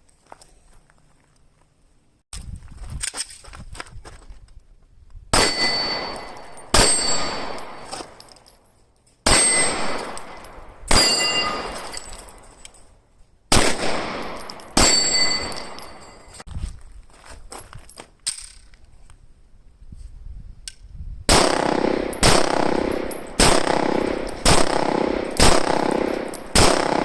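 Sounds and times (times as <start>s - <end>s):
pistol shots with echo: 5.4s - 7.9s, 9.3s - 11.9s, 13.5s - 16.0s, 21.3s - 27.0s.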